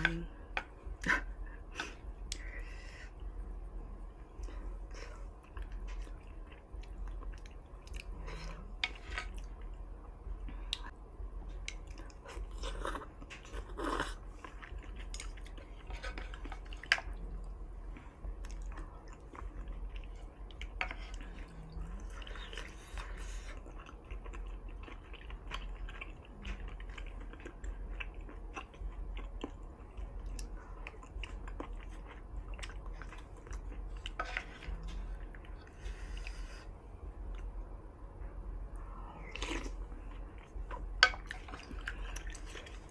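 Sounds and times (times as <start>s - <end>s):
low steady hum: 0.0s - 42.9s
person chewing: 11.5s - 37.5s, 39.2s - 42.9s.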